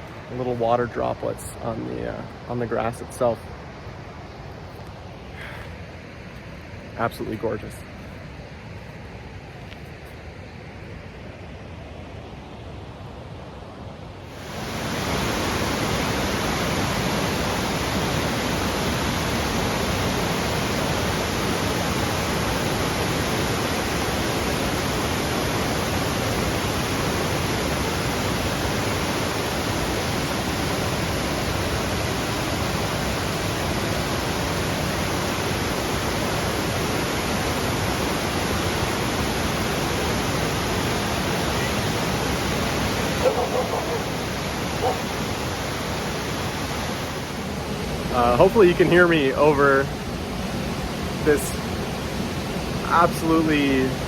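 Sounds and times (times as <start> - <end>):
waterfall roaring: 0.0 - 9.9, 14.1 - 54.0.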